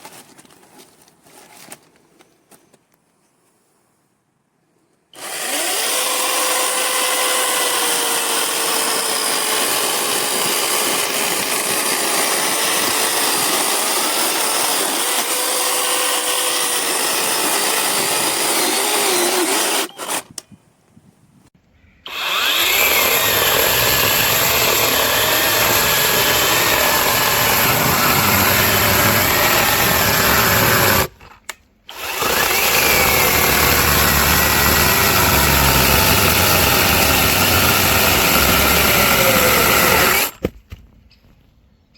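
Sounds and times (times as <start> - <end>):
electric chainsaw cutting wood: 5.2 - 20.3, 22.1 - 31.3, 31.9 - 40.4.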